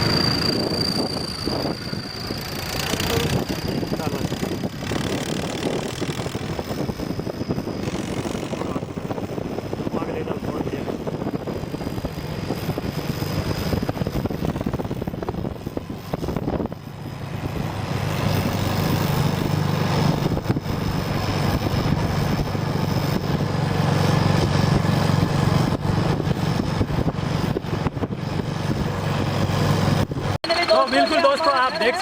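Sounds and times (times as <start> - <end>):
turbo whistle: 0.0 - 4.0
tractor diesel engine running: 0.0 - 32.0.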